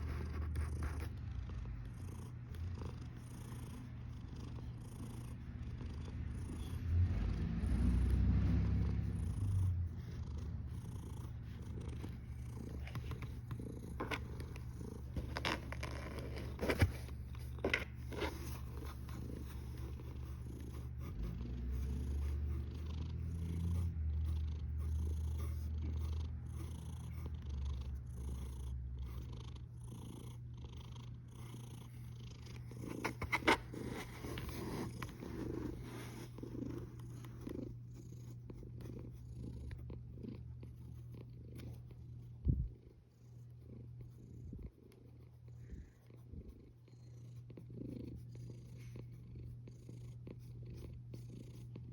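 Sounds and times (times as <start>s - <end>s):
cat snoring: 0.0s - 40.5s.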